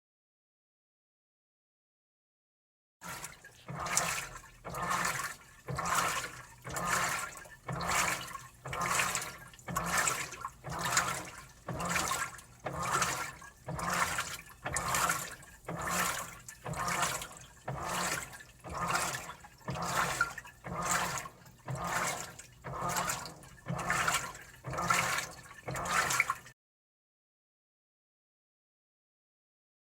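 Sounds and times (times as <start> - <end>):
washing machine sloshing: 3.0 - 26.6.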